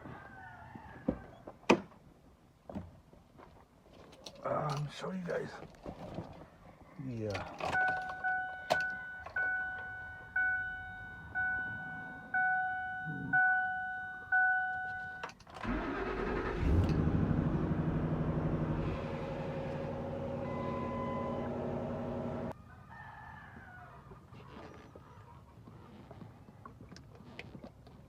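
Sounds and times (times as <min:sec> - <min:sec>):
truck warning chime dinging: 0:07.8 - 0:15.4, 0:20.3 - 0:22.5
engine cranking and idling: 0:15.4 - 0:22.5.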